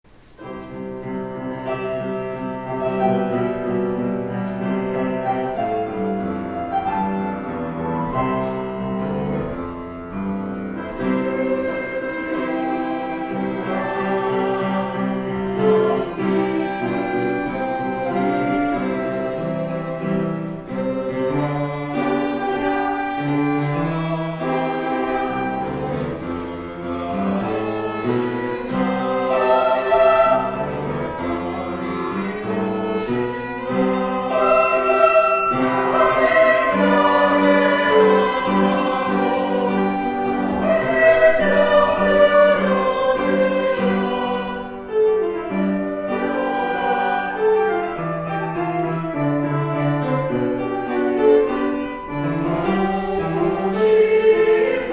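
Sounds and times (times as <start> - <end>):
instrumental accompaniment: 0.1 - 54.9
choir singing in parts: 10.5 - 49.2, 50.0 - 54.9.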